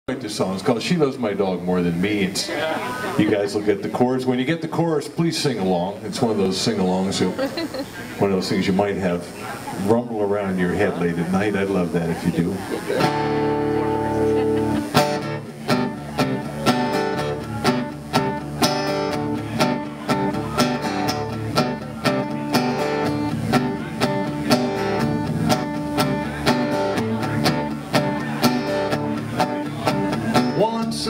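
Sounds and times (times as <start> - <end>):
acoustic guitar strumming: 12.9 - 31.0
held notes underneath: 13.0 - 31.0.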